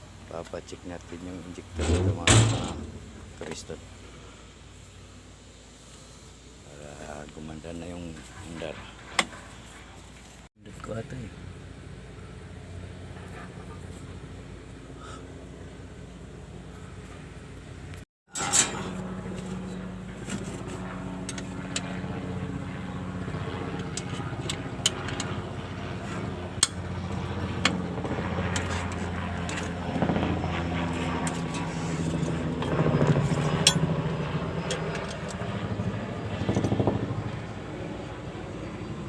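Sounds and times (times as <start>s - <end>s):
engine running: 0.0s - 10.5s, 11.3s - 39.0s.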